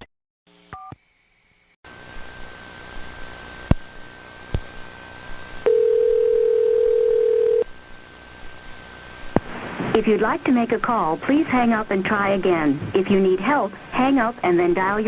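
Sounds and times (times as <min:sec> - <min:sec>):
telephone ringing tone: 0:05.6 - 0:07.7
hissing telephone line: 0:09.3 - 0:15.0.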